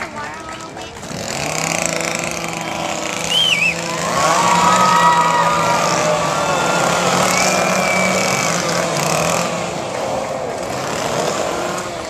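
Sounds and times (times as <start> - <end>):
chainsaw engines revving: 0.0 - 12.0.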